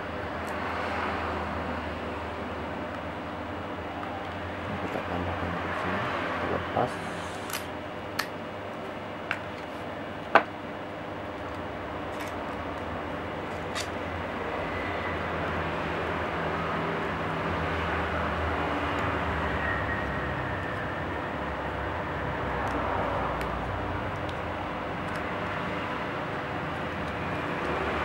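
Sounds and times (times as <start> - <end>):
steady background hum: 0.0 - 28.0
laptop parts clicking and tapping: 22.6 - 25.3.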